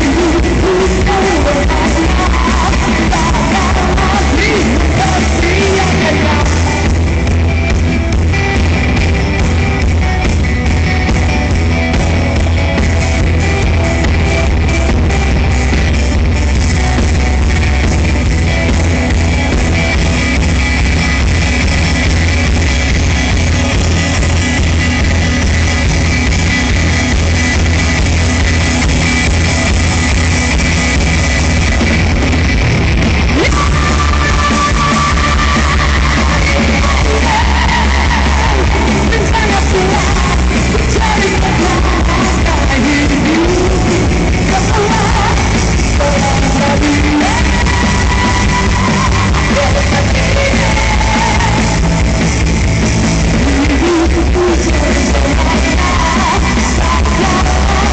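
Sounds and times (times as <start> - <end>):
person singing: 0.0 - 7.1, 33.3 - 52.2, 53.3 - 57.9
electric guitars: 0.0 - 57.9
rock band playing live: 0.0 - 57.9
steady drum beat: 0.0 - 57.9.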